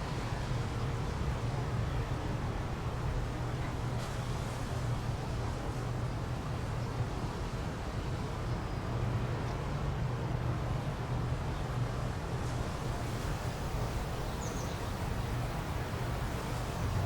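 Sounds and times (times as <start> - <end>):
constant low hum: 12.4 - 17.0
even hiss: 12.4 - 17.0.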